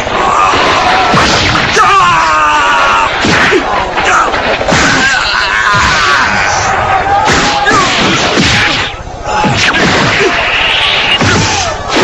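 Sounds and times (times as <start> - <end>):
fighters shouting and straining: 0.0 - 12.0
punch and kick impacts: 7.3 - 10.3, 11.2 - 12.0.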